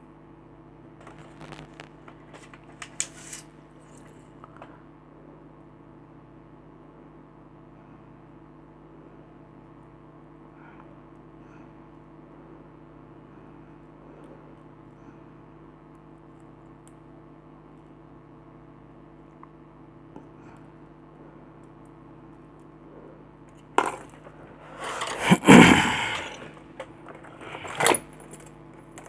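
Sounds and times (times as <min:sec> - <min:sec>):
faint electrical hum: 0:00.0 - 0:29.0
clatter of hard objects: 0:23.7 - 0:29.0.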